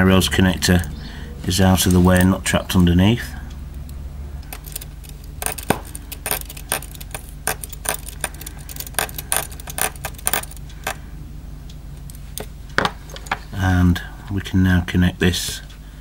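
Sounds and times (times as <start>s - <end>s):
steady low hum: 0.0s - 16.0s
screwdriver and metal parts clicking: 3.8s - 11.0s, 12.0s - 13.5s.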